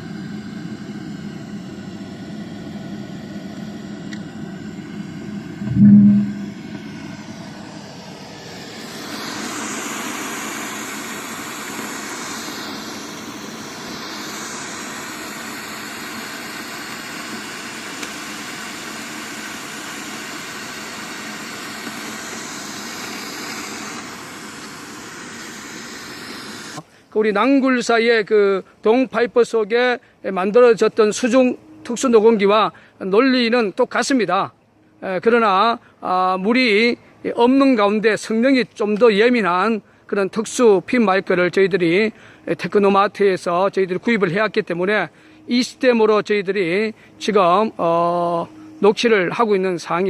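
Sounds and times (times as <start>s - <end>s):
low hum and rushing noise: 3.2s - 9.3s
loud low thump: 5.6s - 6.6s
broad hiss: 8.8s - 27.2s.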